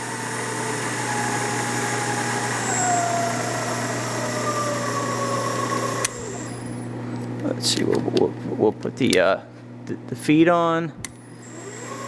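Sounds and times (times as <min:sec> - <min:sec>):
milling machine motor humming: 0:00.0 - 0:10.2, 0:11.0 - 0:12.0.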